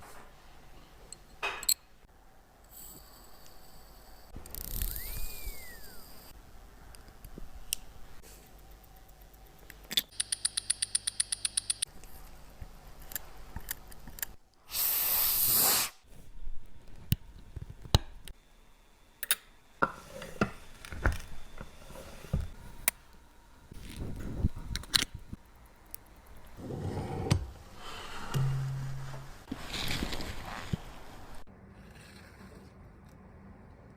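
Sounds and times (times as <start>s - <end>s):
hand tool clicks and taps: 9.6s - 11.9s
loud hiss of spray: 14.7s - 16.1s.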